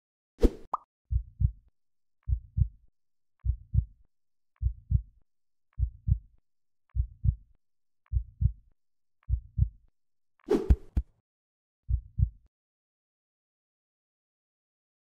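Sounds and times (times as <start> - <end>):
heartbeat thumps: 1.1 - 1.6, 2.3 - 2.8, 3.4 - 3.9, 4.6 - 5.1, 5.8 - 6.3, 6.9 - 7.4, 8.1 - 8.6, 9.3 - 9.8, 11.9 - 12.4.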